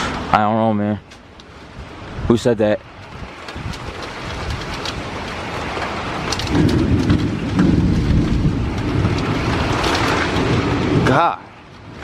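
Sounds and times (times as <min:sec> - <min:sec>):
heavy rain: 0:00.0 - 0:12.0
thunder rumbling: 0:03.0 - 0:12.0.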